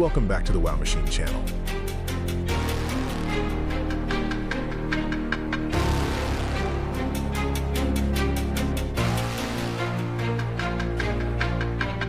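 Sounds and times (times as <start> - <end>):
music with percussive beat and bass: 0.6 - 12.0.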